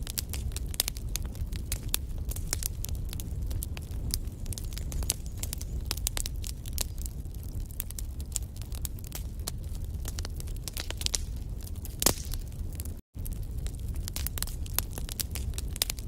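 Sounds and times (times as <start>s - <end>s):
wood fire crackling: 0.0s - 16.0s.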